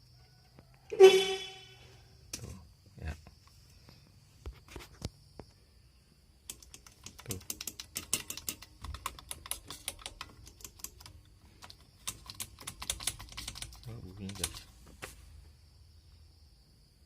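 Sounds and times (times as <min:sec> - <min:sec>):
rapid clicking and tapping: 0:06.4 - 0:14.7.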